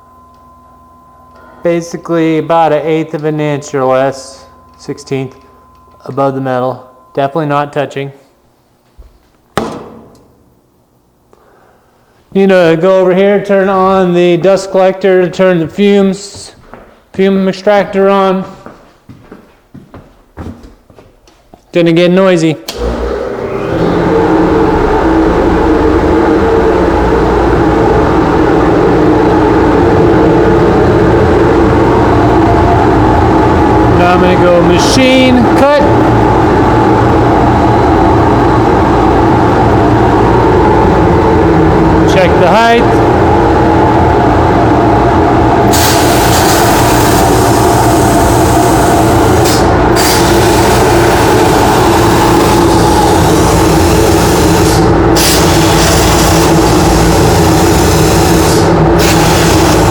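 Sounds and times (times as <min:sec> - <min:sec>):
blowers whirring: 0:00.0 - 0:08.7, 0:22.7 - 0:59.9
low hum: 0:00.0 - 0:16.1, 0:22.8 - 0:59.9
steady tones: 0:00.0 - 0:16.6, 0:23.5 - 0:59.9
plasma cutter arc hissing: 0:45.7 - 0:59.9.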